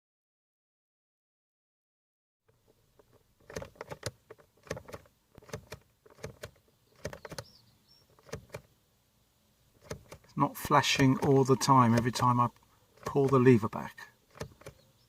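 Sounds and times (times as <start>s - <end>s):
plastic switch stalk clicks: 9.8s - 10.4s, 11.0s - 14.8s.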